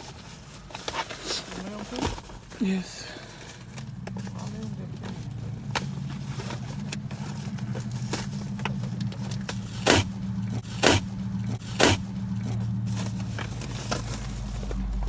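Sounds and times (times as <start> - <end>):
steady low hum: 2.2 - 15.0
cardboard ripping: 9.6 - 12.1.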